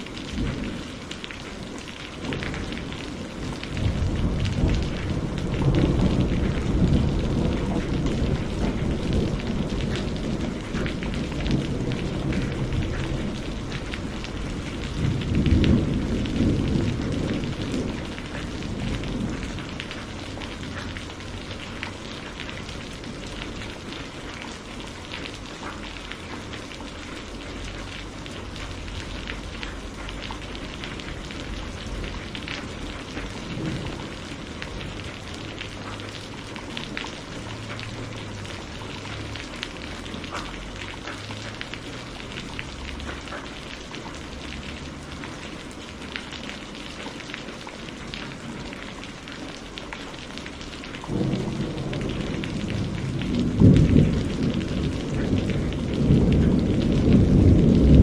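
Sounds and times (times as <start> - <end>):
heavy rain: 0.0 - 58.0
raindrops ticking on a surface: 0.0 - 58.0
thunder rolling: 0.3 - 1.1, 2.2 - 23.7, 28.4 - 40.2, 51.0 - 58.0.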